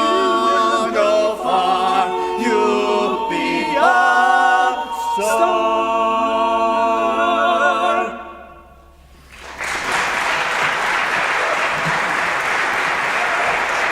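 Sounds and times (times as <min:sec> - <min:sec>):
vocal quartet holding a chord: 0:00.0 - 0:09.1
audience applauding: 0:09.3 - 0:13.9.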